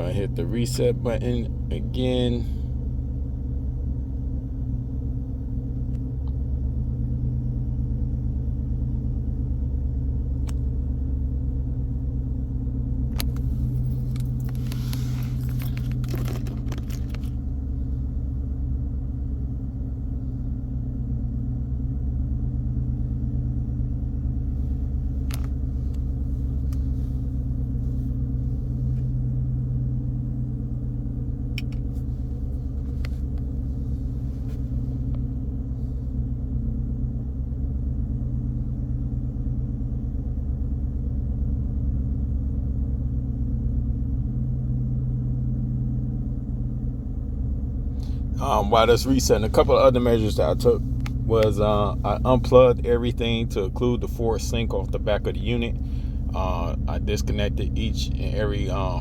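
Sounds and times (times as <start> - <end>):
engine idling rumble: 0.0 - 59.0
brief rustle: 13.2 - 17.4.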